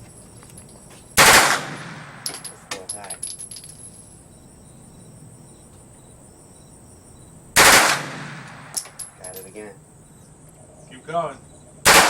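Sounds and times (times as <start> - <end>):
automatic gunfire burst: 1.2 - 2.2, 7.6 - 8.7.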